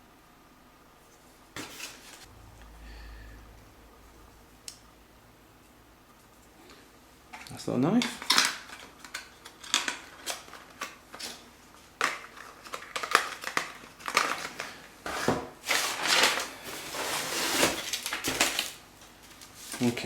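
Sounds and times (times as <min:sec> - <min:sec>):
packaging rustling and crinkling: 0:08.0 - 0:20.0.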